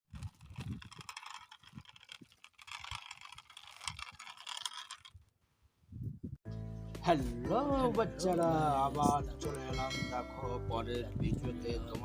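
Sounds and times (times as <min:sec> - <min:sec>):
plastic toys clicking and rattling: 0:00.1 - 0:05.2.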